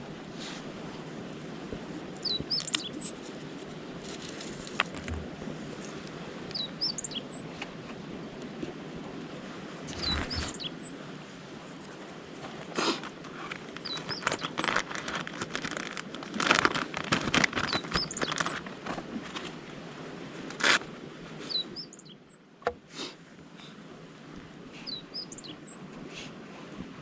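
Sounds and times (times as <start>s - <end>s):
rustling and crinkling: 1.7s - 6.2s, 9.9s - 10.6s, 11.5s - 19.7s, 20.4s - 20.9s
small birds chirping: 2.2s - 3.4s, 6.5s - 7.5s, 9.9s - 11.0s, 13.6s - 15.0s, 17.4s - 18.7s, 21.5s - 22.5s, 24.8s - 25.8s.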